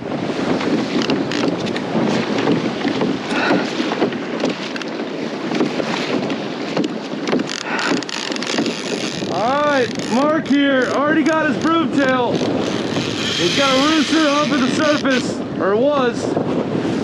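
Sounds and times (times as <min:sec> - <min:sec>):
wind buffeting microphone: 0:00.0 - 0:17.0
short uneven crackles: 0:07.3 - 0:15.3.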